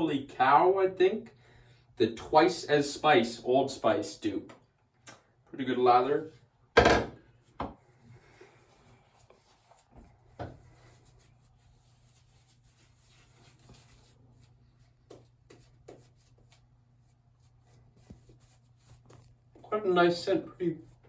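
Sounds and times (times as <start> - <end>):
soft rubbing: 7.4 - 21.0.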